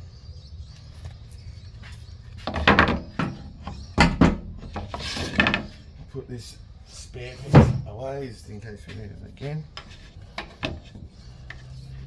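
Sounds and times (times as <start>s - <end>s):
low steady hum: 0.0s - 12.0s
wood or tools knocking: 2.4s - 5.8s, 9.7s - 11.7s.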